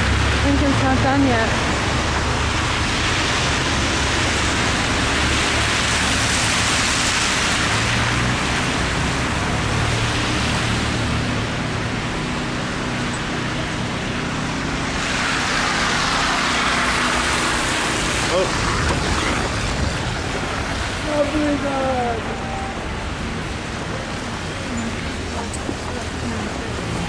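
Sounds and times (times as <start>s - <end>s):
road traffic hiss: 0.0s - 27.0s.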